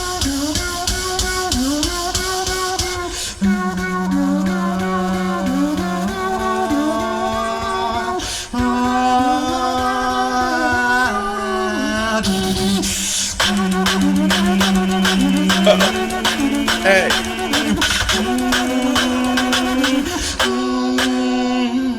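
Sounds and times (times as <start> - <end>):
sliding vocal line: 3.4 - 21.9
beatbox clicks and snare hits: 13.4 - 21.2.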